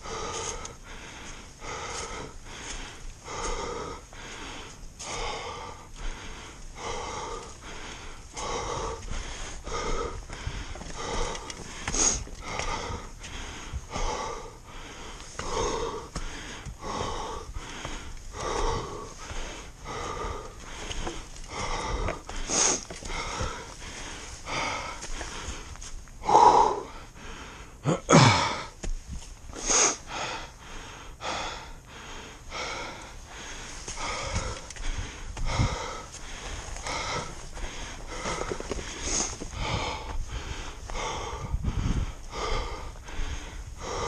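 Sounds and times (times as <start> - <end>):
person breathing heavily: 0.0 - 44.0
person gasping and groaning: 26.2 - 28.8.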